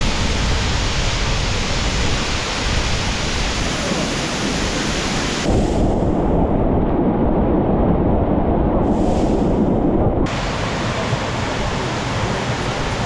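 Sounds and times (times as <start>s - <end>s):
waterfall roaring: 0.0s - 5.6s, 10.3s - 13.0s.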